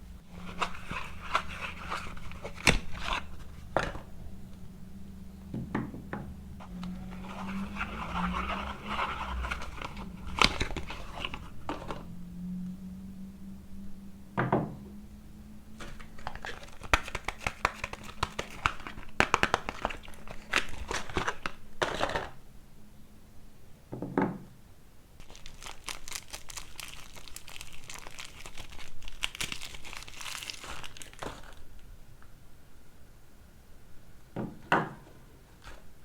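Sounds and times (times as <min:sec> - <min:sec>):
soap wrapper crinkling and tearing: 0:00.4 - 0:04.0, 0:15.8 - 0:22.4, 0:25.2 - 0:31.8.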